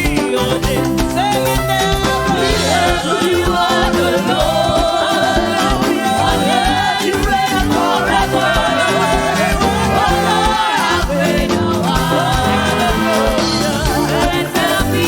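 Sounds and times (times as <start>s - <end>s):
band with steady drum beat: 0.0s - 15.0s
voices singing together: 0.0s - 15.0s.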